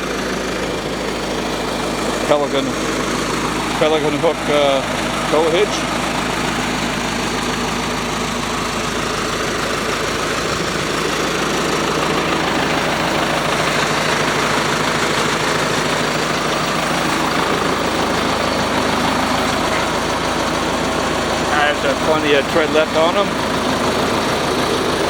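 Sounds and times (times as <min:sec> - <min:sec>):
wood chipper diesel engine running: 0:00.0 - 0:25.0.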